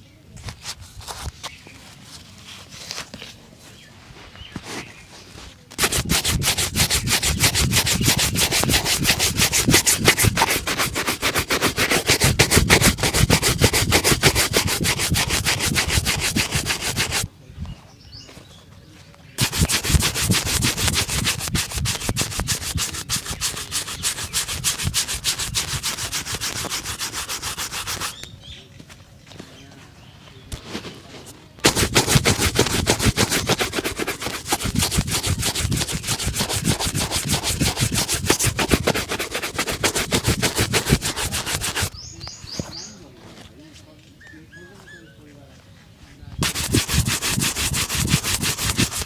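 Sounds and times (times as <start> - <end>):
shoe being buffed: 5.7 - 17.3, 19.4 - 28.2, 31.6 - 41.9, 46.4 - 49.0.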